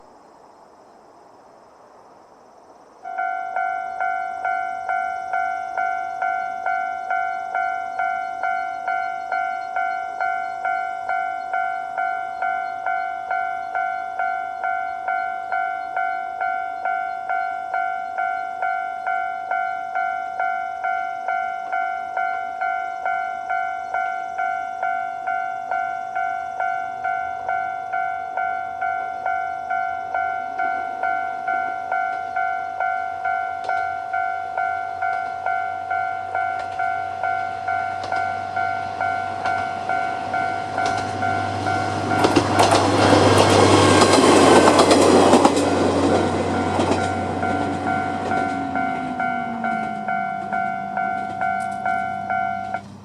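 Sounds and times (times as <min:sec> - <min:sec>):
level-crossing warning bell: 0:03.0 - 0:53.0.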